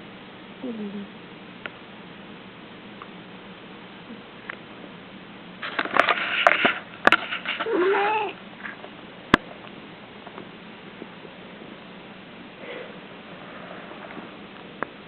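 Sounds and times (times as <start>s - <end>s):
cat whimpering in sleep: 0.6s - 1.2s, 7.6s - 8.4s.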